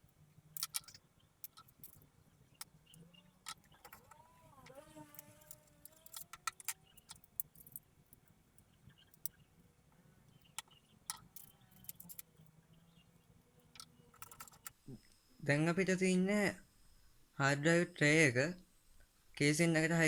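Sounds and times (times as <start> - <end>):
hard drive clicks and rattles: 0.0 - 8.2, 10.3 - 12.4, 13.6 - 14.8.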